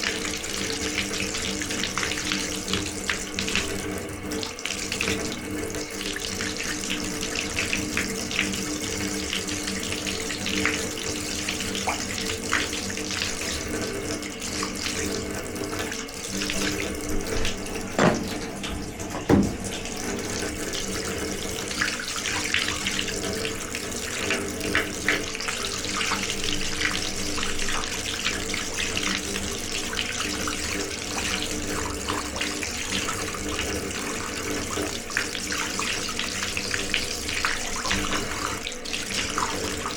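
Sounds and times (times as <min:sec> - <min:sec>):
water running from a tap: 0:00.0 - 0:39.9
sharp knocks: 0:18.0 - 0:19.8.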